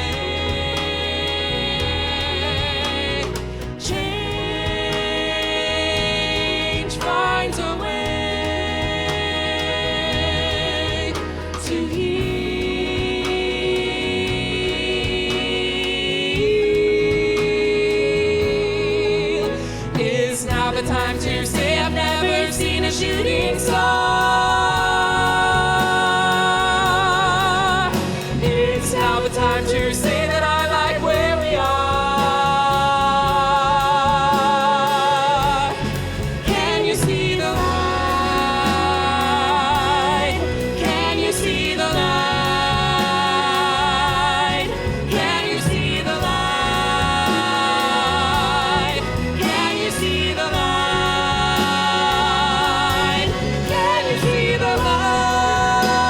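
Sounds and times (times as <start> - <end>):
live band with strings: 0.0 - 56.0
singers in harmony: 0.0 - 56.0.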